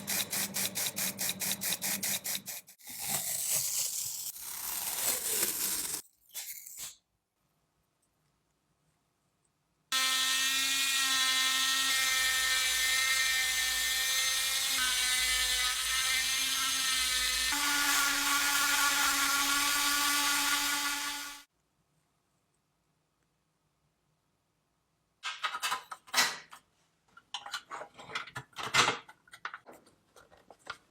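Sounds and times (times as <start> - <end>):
power tool motor whining: 17.1 - 21.4.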